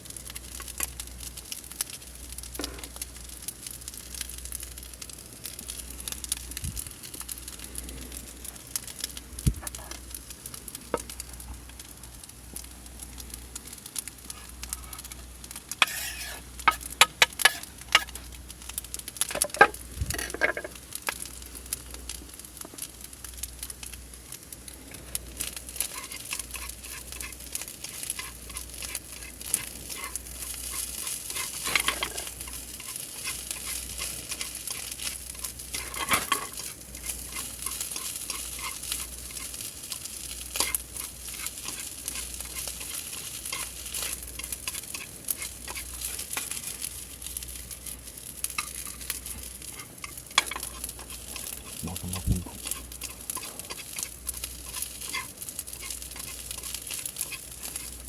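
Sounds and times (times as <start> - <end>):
food sizzling in a pan: 0.0 - 58.0
clicks and scrapes of stirring: 14.2 - 18.3, 19.3 - 20.8, 24.9 - 58.0.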